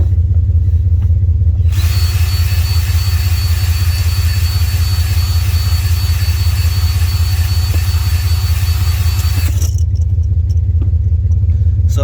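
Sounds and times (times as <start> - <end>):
steady low rumble: 0.0 - 12.0
drill whining: 1.6 - 9.8.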